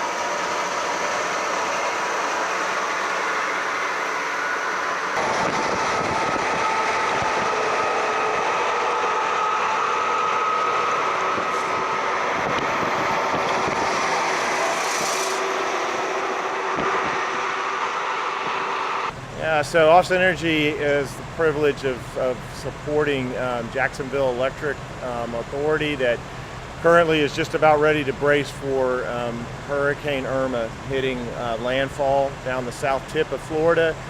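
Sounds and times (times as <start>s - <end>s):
road noise of moving vehicles: 0.0s - 21.8s
deeper rumble: 0.0s - 34.0s.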